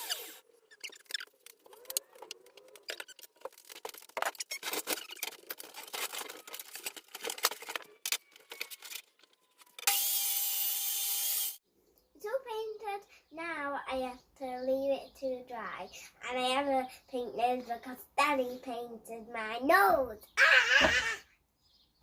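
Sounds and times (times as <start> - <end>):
power tool running: 9.8 - 11.6.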